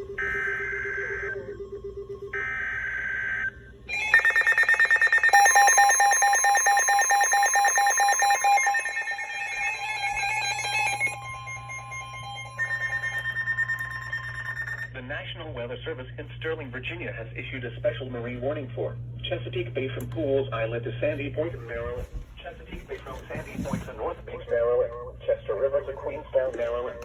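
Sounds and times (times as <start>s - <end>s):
fast-pulsing electronic alarm: 0.0s - 14.9s
steady alert tone: 0.0s - 14.9s.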